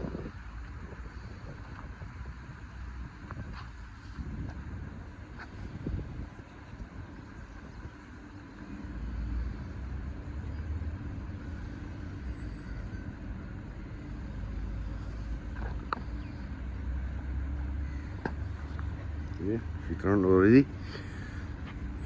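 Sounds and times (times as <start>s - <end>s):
car engine low rumble: 0.0s - 22.0s.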